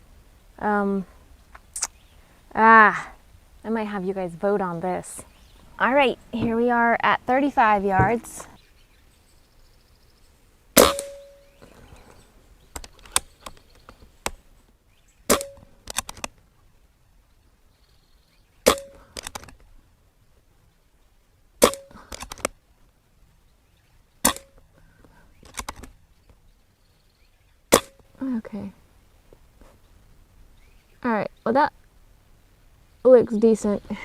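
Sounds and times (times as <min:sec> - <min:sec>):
air rifle shots cracking: 0:10.8 - 0:11.4, 0:15.3 - 0:16.3, 0:18.6 - 0:19.5, 0:21.6 - 0:22.5, 0:24.2 - 0:24.6, 0:27.7 - 0:28.0.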